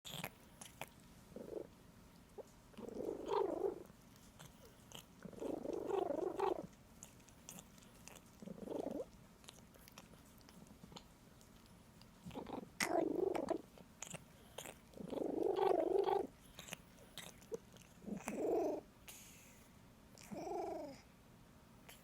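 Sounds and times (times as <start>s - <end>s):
wet licking clicks: 0.1s - 1.1s
pet making vocal noises: 0.1s - 19.6s, 20.2s - 21.1s.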